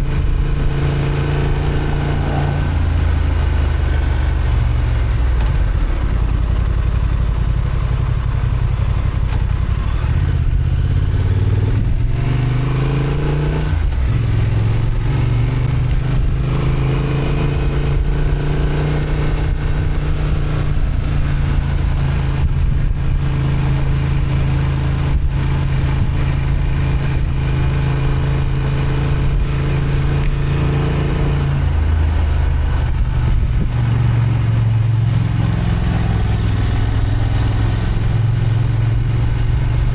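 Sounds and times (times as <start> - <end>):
motorcycle engine under load: 0.0 - 39.9.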